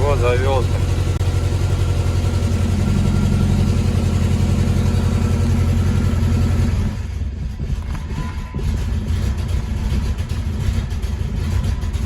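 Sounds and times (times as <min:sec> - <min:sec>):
petrol engine misfiring: 0:00.0 - 0:12.0.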